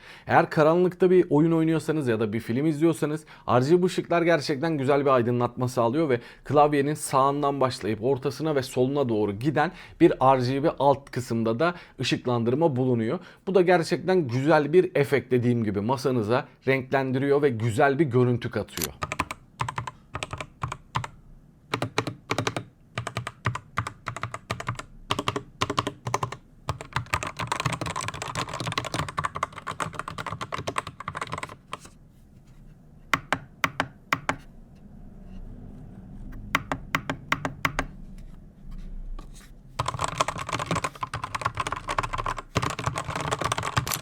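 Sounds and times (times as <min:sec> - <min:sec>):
mechanical keyboard typing: 0:18.8 - 0:31.9, 0:33.2 - 0:34.4, 0:36.6 - 0:37.9, 0:39.8 - 0:44.0.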